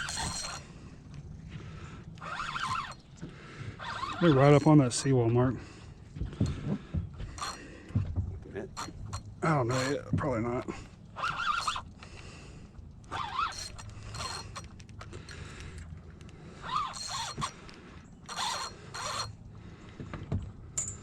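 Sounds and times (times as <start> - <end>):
fishing reel ratcheting: 0.0 - 0.7, 2.2 - 3.2, 3.8 - 5.1, 11.2 - 12.1, 13.0 - 15.9, 16.6 - 19.4.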